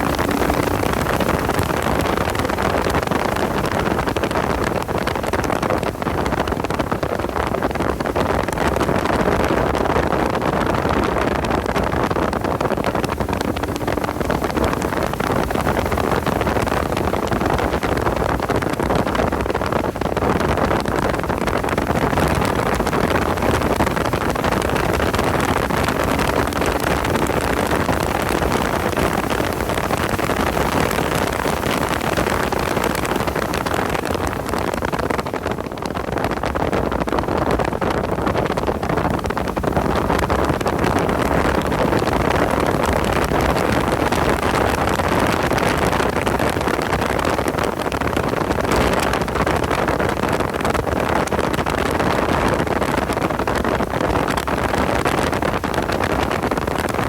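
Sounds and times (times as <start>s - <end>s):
car engine at speed: 0.0s - 5.2s
wind and road noise: 0.0s - 57.0s.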